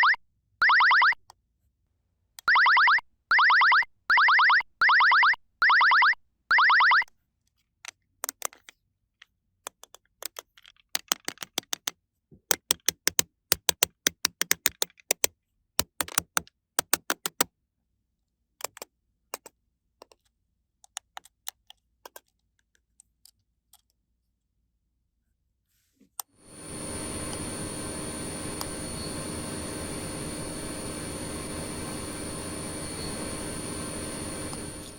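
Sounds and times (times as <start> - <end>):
plastic toy pieces clicking: 7.8 - 8.8, 9.6 - 17.5, 20.8 - 24.0.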